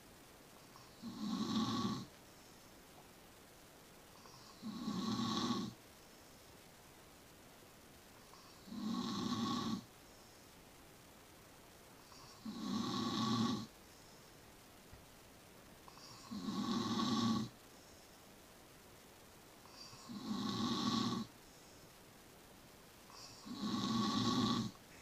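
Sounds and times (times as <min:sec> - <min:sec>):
quiet breaths: 0:00.0 - 0:25.0
loud snores: 0:00.8 - 0:02.1, 0:04.2 - 0:05.8, 0:08.3 - 0:09.9, 0:12.1 - 0:13.7, 0:15.9 - 0:17.5, 0:19.7 - 0:21.3, 0:23.1 - 0:24.8.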